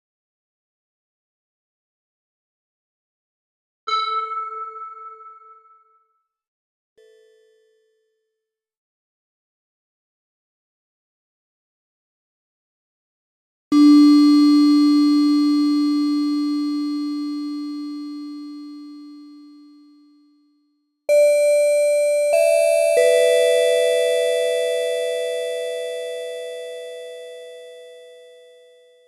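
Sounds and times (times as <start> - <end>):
low bell tone: 3.9 - 6.2, 13.8 - 20.2, 21.1 - 29.0.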